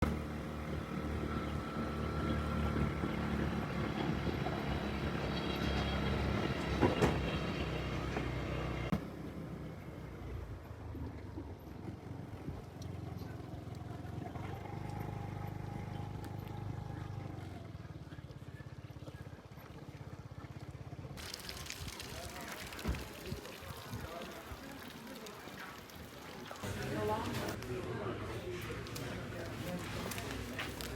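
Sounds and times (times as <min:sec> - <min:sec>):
moving vehicle rumble: 0:00.0 - 0:30.9.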